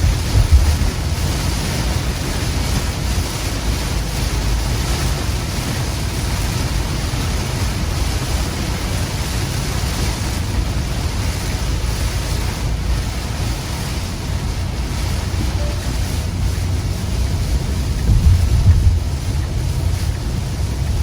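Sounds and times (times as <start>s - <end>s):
heavy rain on a car: 0.0s - 21.0s
road and engine rumble: 0.0s - 21.0s.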